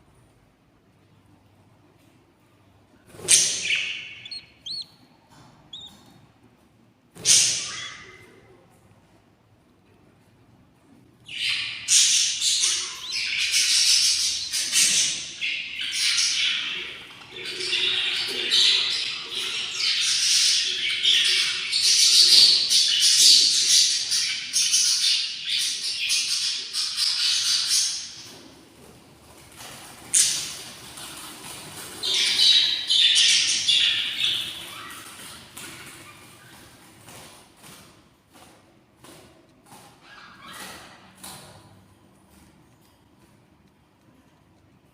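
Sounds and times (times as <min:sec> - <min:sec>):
chicks squawking: 0:03.1 - 0:05.1, 0:05.7 - 0:06.0.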